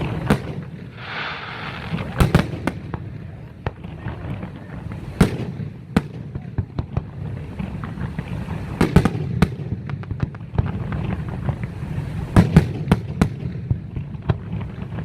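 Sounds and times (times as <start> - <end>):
fireworks bangs and cracks: 0.0 - 15.0
low rumble: 1.0 - 2.9.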